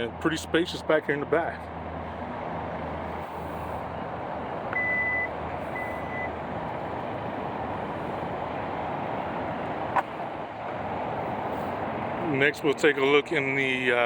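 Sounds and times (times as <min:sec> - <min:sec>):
high electronic warning beeps: 0:04.8 - 0:06.4.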